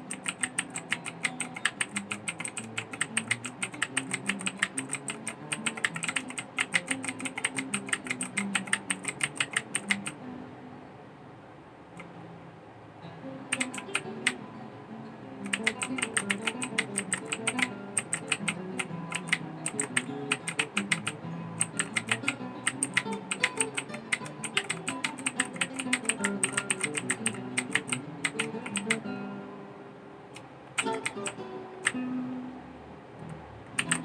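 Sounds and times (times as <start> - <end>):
mechanical keyboard typing: 0.0 - 10.2, 13.5 - 14.4, 15.4 - 29.0, 30.4 - 32.0, 33.7 - 34.0.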